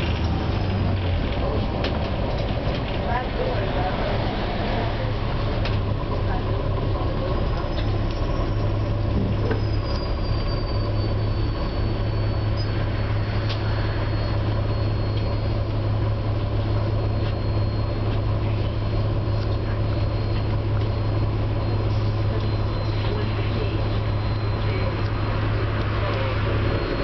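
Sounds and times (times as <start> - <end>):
bus engine drone and road rumble: 0.0 - 27.0
high-pitched whistle: 9.5 - 15.5.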